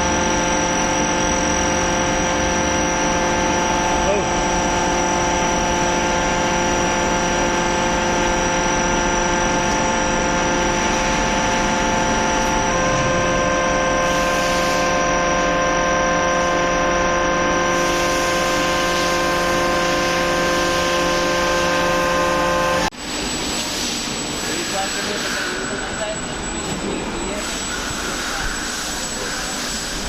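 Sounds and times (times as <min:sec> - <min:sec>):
hydraulic press humming: 0:00.0 - 0:22.9.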